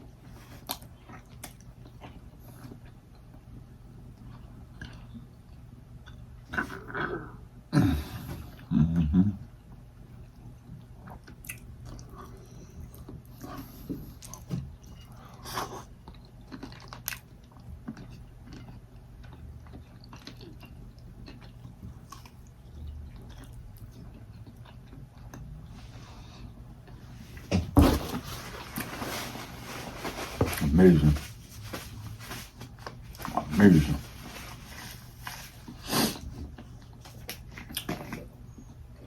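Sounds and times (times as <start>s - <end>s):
faint low hum: 0.0s - 39.0s
person chewing food: 0.5s - 6.9s, 9.7s - 27.5s, 31.4s - 38.8s.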